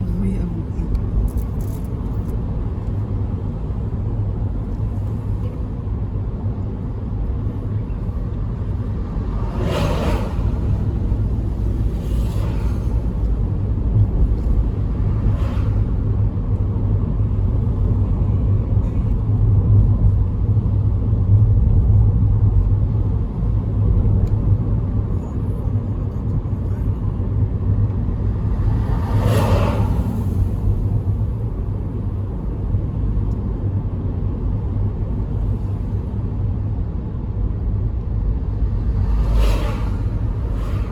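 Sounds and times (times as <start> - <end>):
car road rumble: 0.0 - 40.9
brief whooshes: 9.2 - 13.3, 28.5 - 31.0, 38.9 - 40.9.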